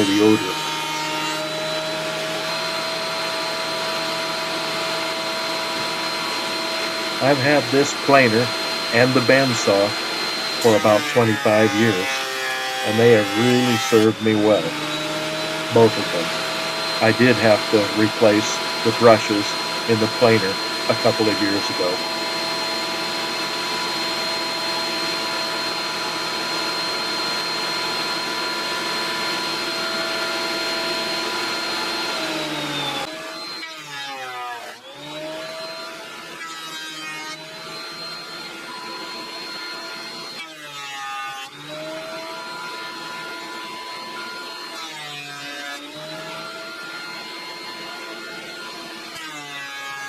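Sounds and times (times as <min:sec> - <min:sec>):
rushing cutting noise: 0:00.0 - 0:29.7
planer motor whine: 0:00.0 - 0:50.0.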